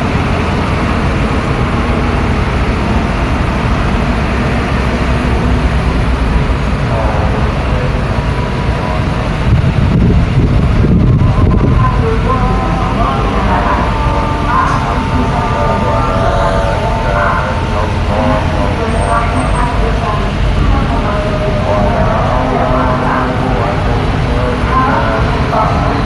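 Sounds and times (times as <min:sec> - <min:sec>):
vehicle engines: 0:00.0 - 0:26.0.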